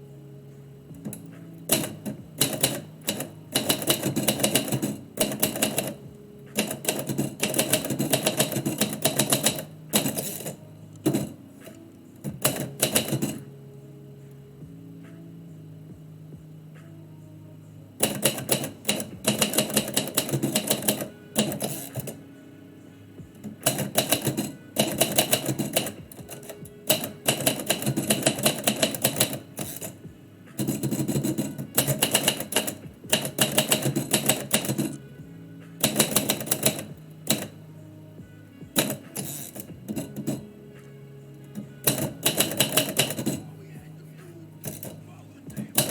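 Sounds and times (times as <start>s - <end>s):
typewriter keystrokes: 1.0s - 13.5s, 18.0s - 22.2s, 23.3s - 30.0s, 30.6s - 35.0s, 35.8s - 37.6s, 38.7s - 40.5s, 41.5s - 43.5s, 45.6s - 45.9s.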